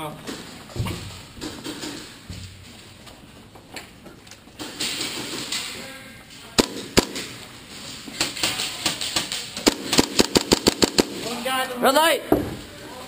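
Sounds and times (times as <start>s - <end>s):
airsoft guns firing: 6.6s - 7.4s, 8.2s - 11.5s.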